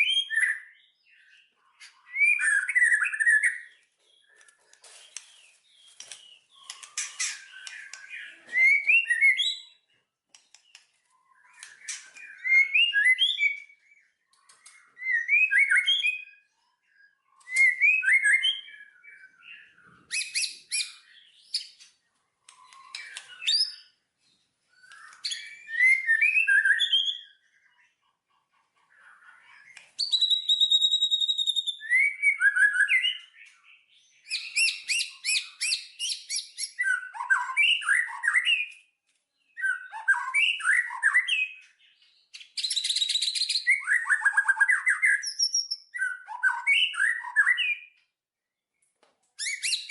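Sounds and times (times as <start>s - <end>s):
songbird chirps and trills: 0.0s - 49.9s.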